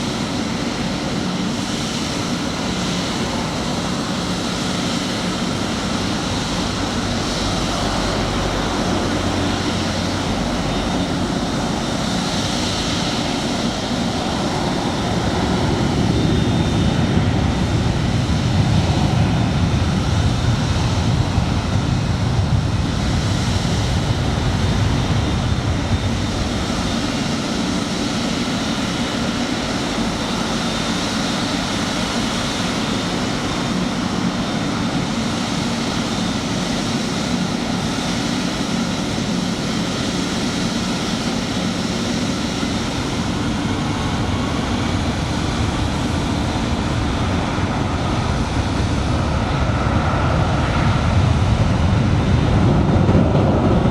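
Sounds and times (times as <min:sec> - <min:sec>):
jet engines running: 0:00.0 - 0:53.9.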